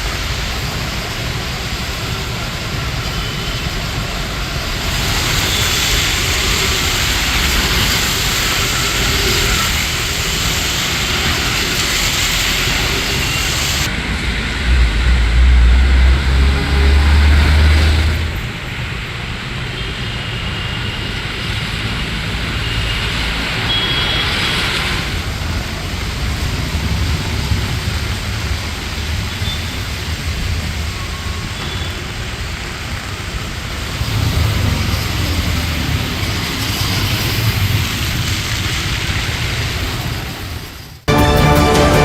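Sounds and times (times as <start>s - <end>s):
strong wind: 0.0s - 19.4s
road traffic: 0.0s - 42.0s.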